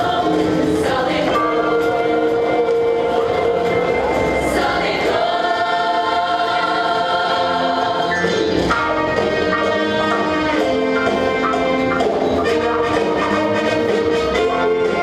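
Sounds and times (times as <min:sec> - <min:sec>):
choir singing in harmony: 0:00.0 - 0:15.0.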